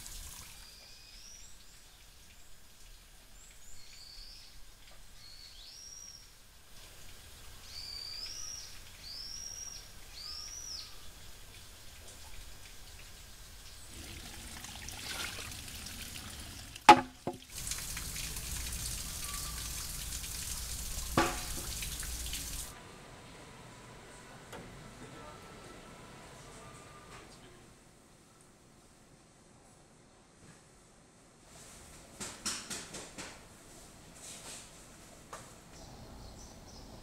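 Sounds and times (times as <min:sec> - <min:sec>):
water running and splashing: 0:00.0 - 0:00.7, 0:11.4 - 0:22.8
bird chirping: 0:07.0 - 0:12.0, 0:19.0 - 0:19.9, 0:35.8 - 0:37.0
sharp ringing knocks: 0:16.9 - 0:17.4.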